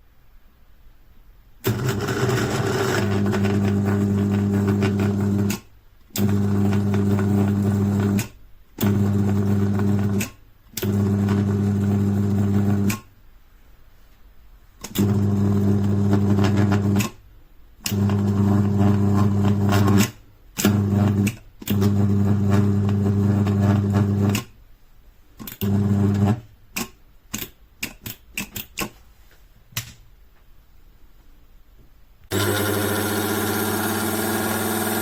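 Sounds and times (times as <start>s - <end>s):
electric spice grinder pulsing: 1.7s - 5.6s, 6.2s - 8.2s, 17.9s - 20.0s, 32.3s - 35.0s.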